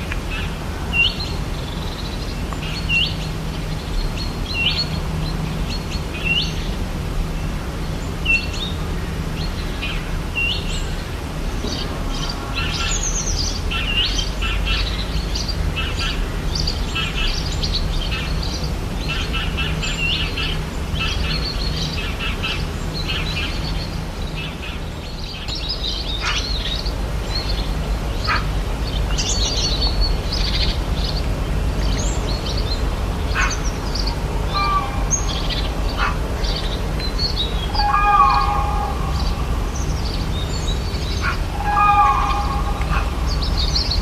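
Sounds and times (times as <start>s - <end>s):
birds chirping and calling: 11.6s - 44.0s
steady low rumble: 13.2s - 44.0s
loud call of held tones: 37.7s - 39.8s, 41.5s - 43.4s.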